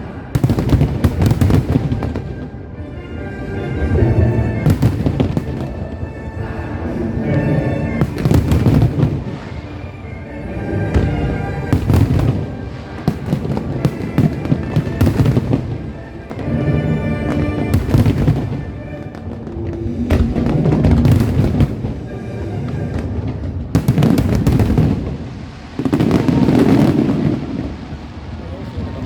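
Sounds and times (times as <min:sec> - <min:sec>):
fireworks bursting and crackling: 0:00.0 - 0:02.7, 0:03.8 - 0:29.0
background music: 0:00.0 - 0:29.0.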